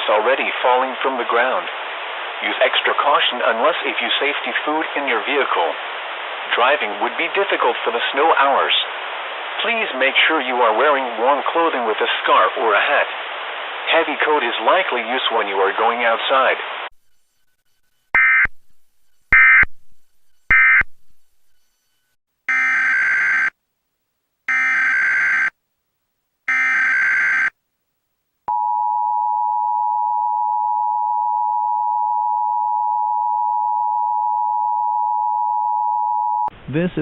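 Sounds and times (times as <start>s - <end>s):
two-tone attention signal: 18.2s - 18.5s, 20.4s - 20.9s.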